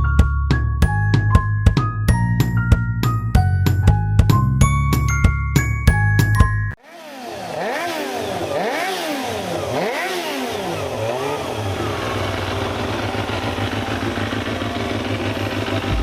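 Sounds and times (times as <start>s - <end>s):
motorcycle engine revving: 6.8s - 16.0s
motorcycle engine idling: 7.5s - 16.0s.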